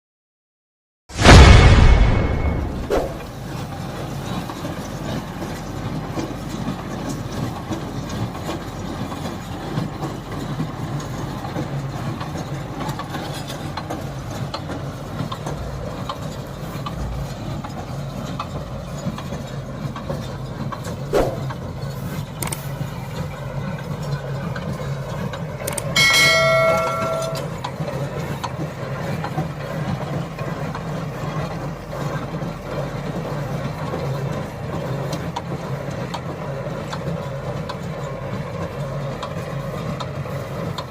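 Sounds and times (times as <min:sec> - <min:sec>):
baler low mechanical drone: 0:14.1 - 0:28.4
loud ringing tone: 0:26.0 - 0:27.6.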